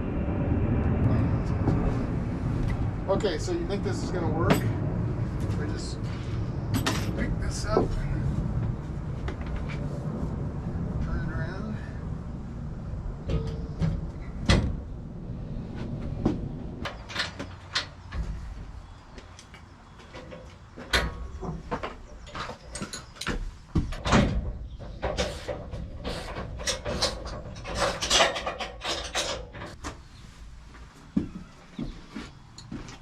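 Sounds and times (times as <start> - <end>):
knocks and clatter of wood: 19.6 - 30.0.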